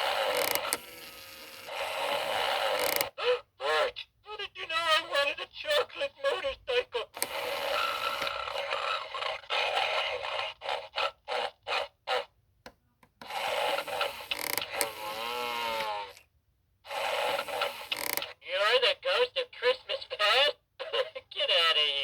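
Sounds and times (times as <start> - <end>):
toy speaker playing snores: 0.0 - 3.9, 7.2 - 12.3, 13.2 - 16.2, 16.9 - 18.4.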